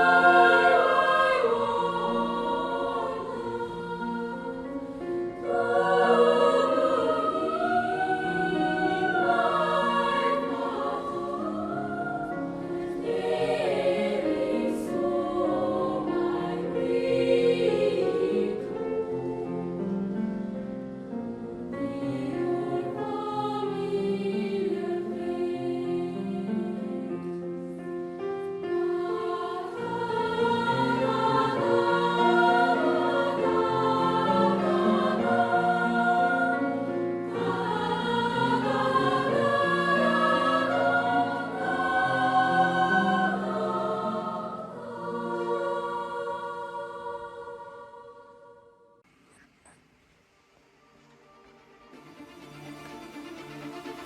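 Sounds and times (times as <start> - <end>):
choir-like vocal melody: 0.0 - 49.1, 50.8 - 54.0
soft steady accompaniment: 0.0 - 54.0.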